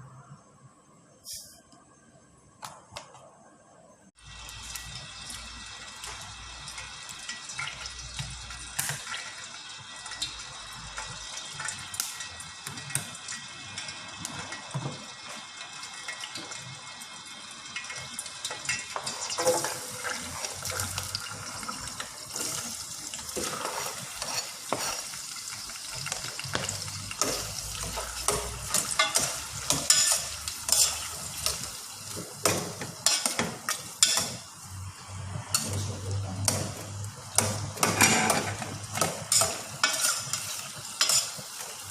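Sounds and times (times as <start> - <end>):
food sizzling in a pan: 4.2 - 41.9
metal utensil scraping a pan: 18.7 - 34.5, 35.4 - 41.9.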